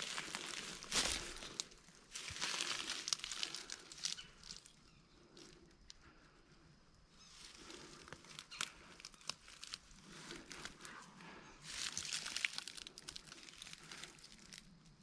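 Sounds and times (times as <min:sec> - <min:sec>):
dry leaves rustling and crunching: 0:00.0 - 0:04.7, 0:07.3 - 0:10.8, 0:11.7 - 0:14.8.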